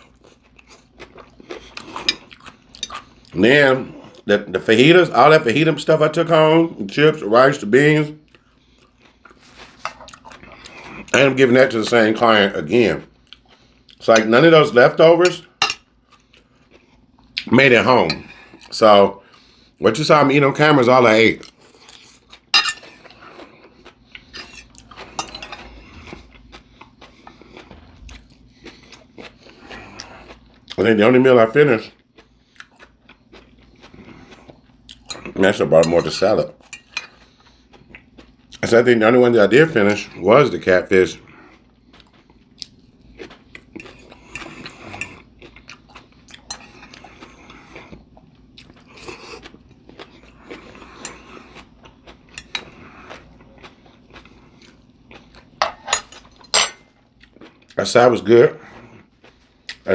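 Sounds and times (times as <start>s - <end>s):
person chewing and crunching food: 0.0s - 59.9s
cutlery and dishes clinking: 15.2s - 15.8s, 22.5s - 23.0s, 24.4s - 25.7s, 55.6s - 56.8s.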